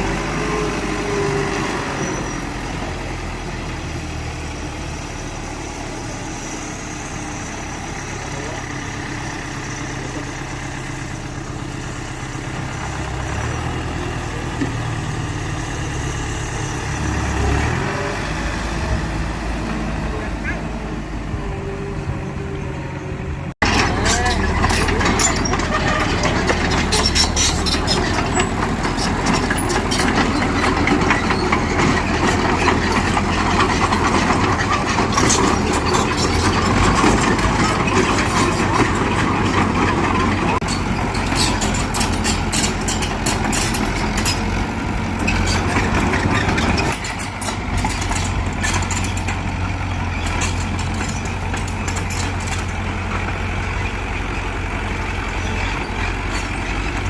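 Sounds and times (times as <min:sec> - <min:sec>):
diesel engine drone: 0:00.0 - 0:57.0
machinery working with clanks: 0:23.6 - 0:57.0.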